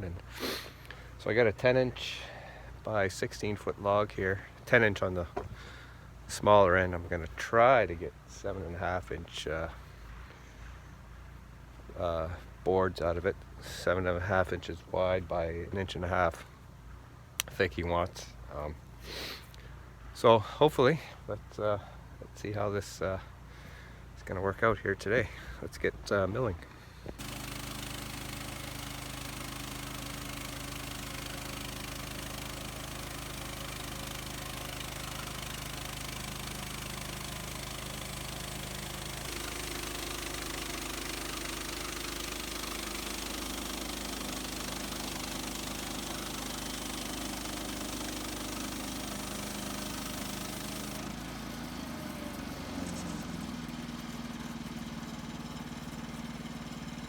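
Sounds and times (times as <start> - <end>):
bandsaw mill engine running: 27.2 - 57.0.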